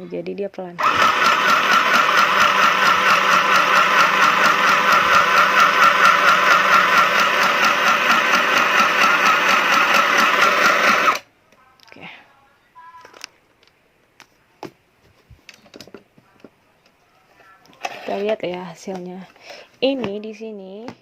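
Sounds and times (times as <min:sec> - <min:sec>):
sewing machine running: 0:00.8 - 0:11.2.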